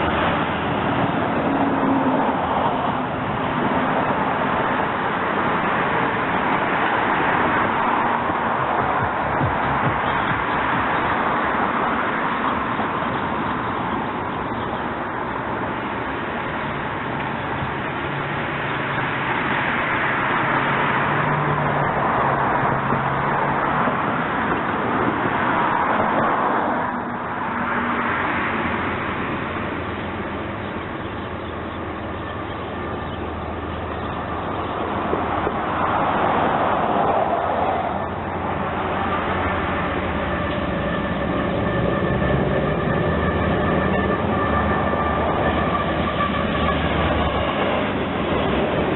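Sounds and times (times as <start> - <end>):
freight train wheel and rail noise: 0.0 - 48.9.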